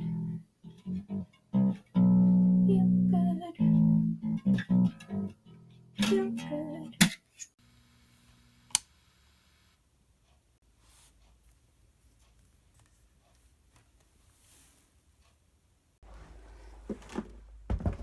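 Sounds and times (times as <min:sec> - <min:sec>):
guitar plucked notes: 0:00.0 - 0:07.2.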